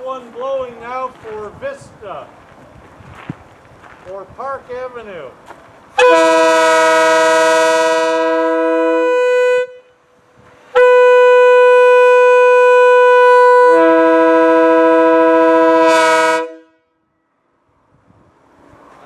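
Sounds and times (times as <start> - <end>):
railroad air horn blasts: 6.0 - 17.1.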